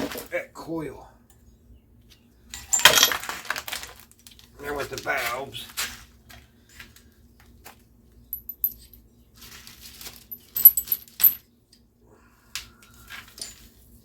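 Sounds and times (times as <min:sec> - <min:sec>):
metal tools clinking: 0:02.6 - 0:03.9, 0:08.3 - 0:09.0, 0:10.0 - 0:11.4.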